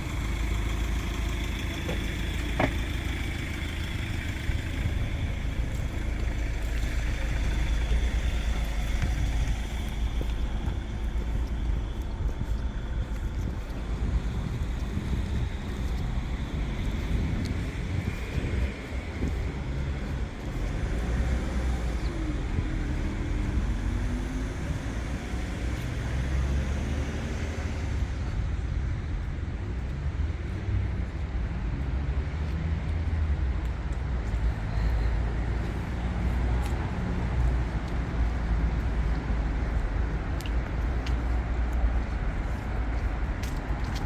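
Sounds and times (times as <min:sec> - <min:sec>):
faint engine tones: 0:00.0 - 0:44.0
low rumble of passing cars: 0:00.0 - 0:44.0.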